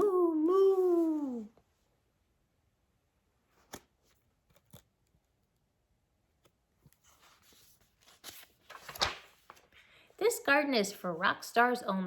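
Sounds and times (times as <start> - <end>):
paper pages rustling: 6.8 - 9.8.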